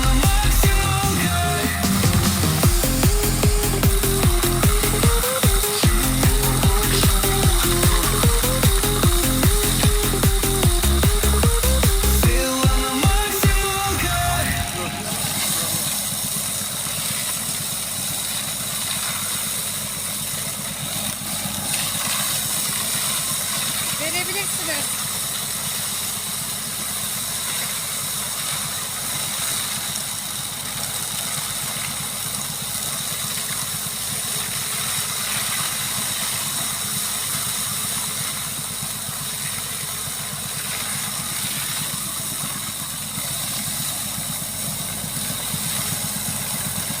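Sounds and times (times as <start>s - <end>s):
high whine: 0.0s - 18.4s
tractor engine drone: 0.0s - 47.0s.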